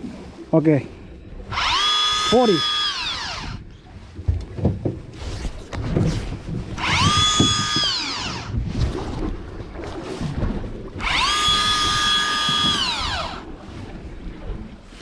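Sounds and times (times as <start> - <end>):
electric motor winding line: 1.5 - 3.6, 6.7 - 8.6, 11.0 - 13.5.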